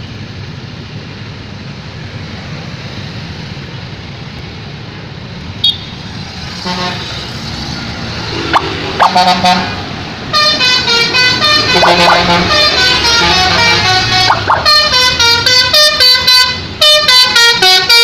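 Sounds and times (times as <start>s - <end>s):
bus engine: 0.0s - 18.0s
road traffic: 0.0s - 18.0s
multi-tone musical bus horn: 6.6s - 7.3s, 8.9s - 18.0s.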